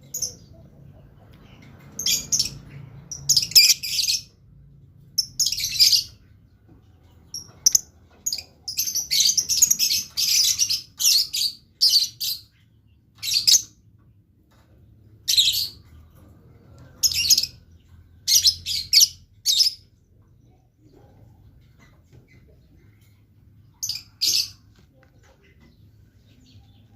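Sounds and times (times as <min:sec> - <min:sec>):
lovebird chirping: 0:00.0 - 0:04.3, 0:05.2 - 0:06.2, 0:07.2 - 0:13.8, 0:17.0 - 0:19.9.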